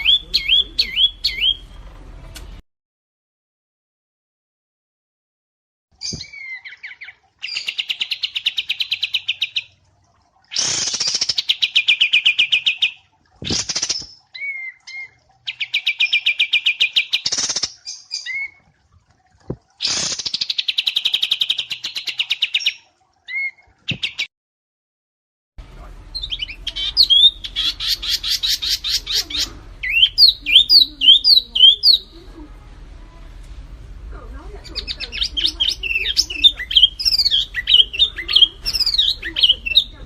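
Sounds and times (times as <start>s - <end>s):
bird whistled notes: 0.0s - 1.7s, 26.1s - 32.1s
songbirds trilling: 0.0s - 1.9s, 6.0s - 9.8s, 26.1s - 32.4s, 34.4s - 40.0s
bird sharp chips: 13.4s - 14.2s.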